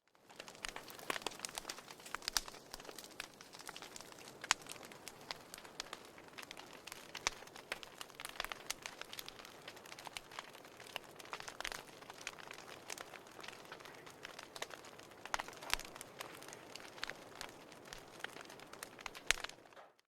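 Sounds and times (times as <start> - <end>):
fire crackling in fireplace: 0.0 - 20.0.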